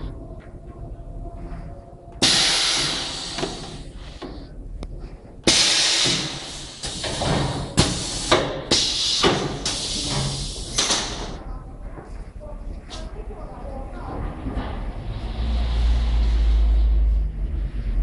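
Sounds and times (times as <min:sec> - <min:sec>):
compressed air hissing: 0:02.2 - 0:04.1, 0:05.4 - 0:11.4.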